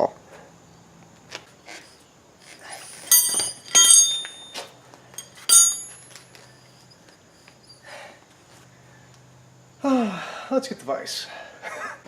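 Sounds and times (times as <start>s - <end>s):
metal tools clinking: 2.6s - 6.2s.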